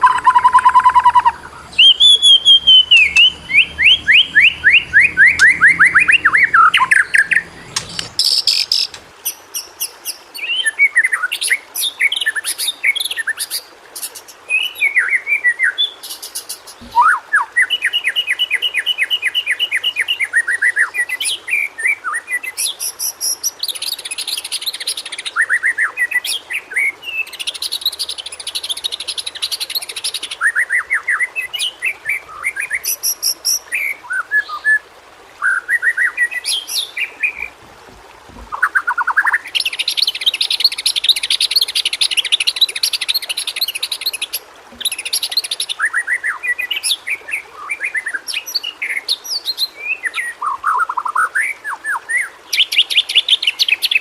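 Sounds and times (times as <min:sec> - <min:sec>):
songbird singing varied song: 0:00.0 - 0:09.7.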